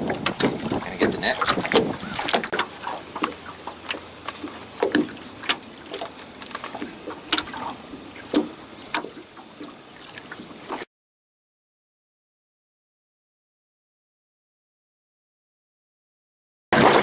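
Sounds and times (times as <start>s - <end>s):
knocks around a small boat: 0.0s - 9.8s
water splashing: 0.0s - 10.9s, 16.8s - 17.0s.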